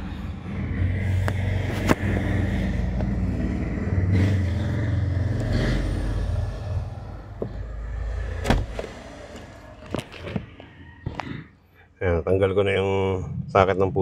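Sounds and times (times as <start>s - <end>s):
vehicle engine running: 0.0s - 10.5s.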